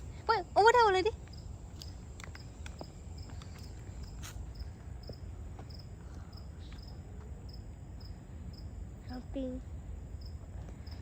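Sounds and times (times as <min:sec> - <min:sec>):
cricket chirping: 0:00.0 - 0:11.0
low outdoor rumble: 0:00.0 - 0:11.0.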